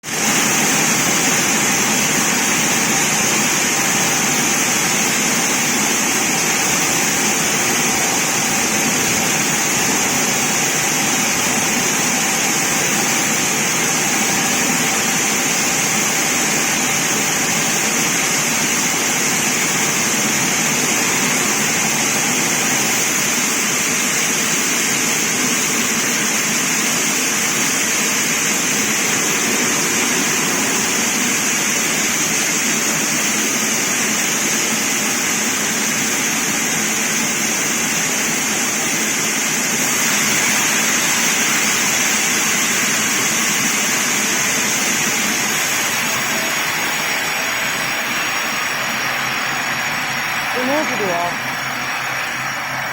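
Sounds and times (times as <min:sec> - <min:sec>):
high-pitched saw whine: 0:39.1 - 0:52.9.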